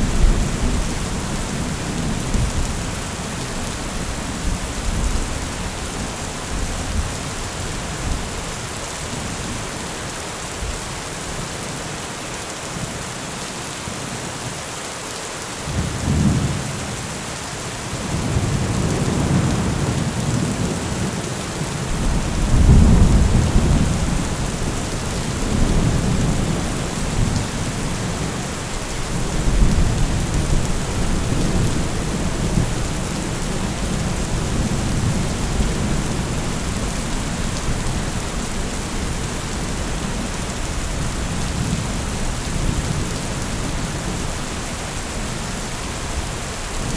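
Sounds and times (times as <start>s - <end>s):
rain on a metal roof: 0.0s - 46.9s
thunder rumbling: 21.9s - 44.4s.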